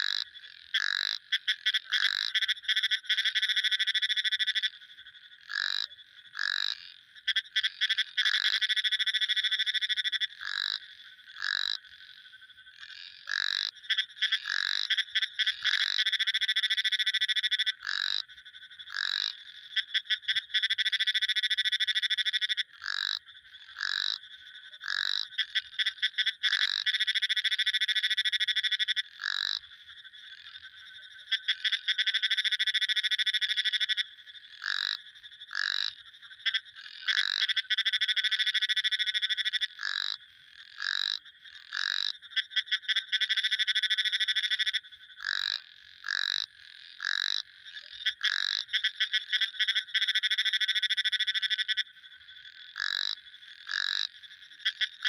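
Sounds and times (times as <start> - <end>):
frog croaks: 0.0 - 55.0
frogs trilling: 0.0 - 55.0.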